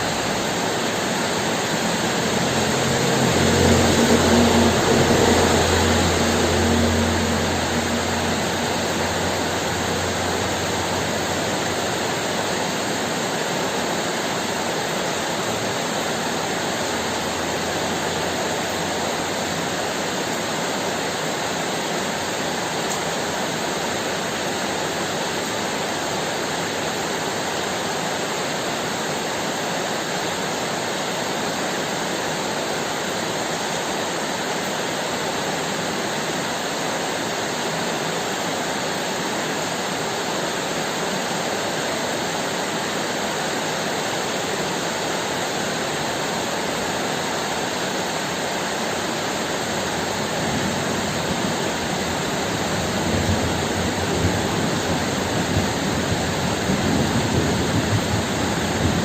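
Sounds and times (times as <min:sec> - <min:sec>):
hard rain falling: 0:00.0 - 0:59.0
low rumble of thunder: 0:50.6 - 0:59.0.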